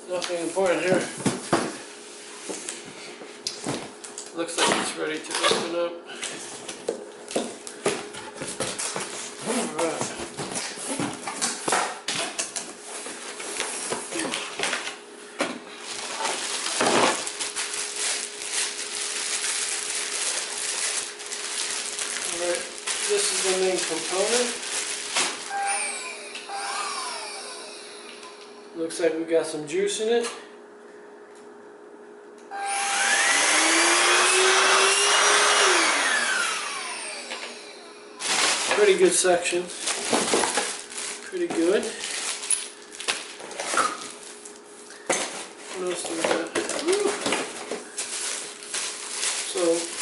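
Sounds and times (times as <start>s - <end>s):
box packaging rustling and scraping: 7.5s - 11.7s, 12.7s - 14.9s, 15.7s - 25.7s, 38.2s - 50.0s
stick vacuum motor whine: 16.1s - 28.8s, 32.4s - 39.0s.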